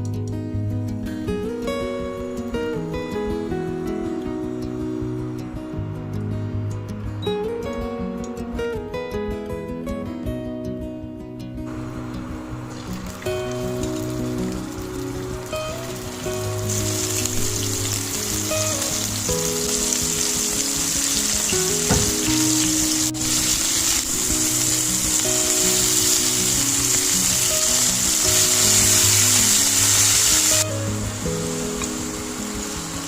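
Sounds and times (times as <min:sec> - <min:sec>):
background music: 0:00.0 - 0:33.0
food sizzling in hot oil: 0:11.7 - 0:33.0.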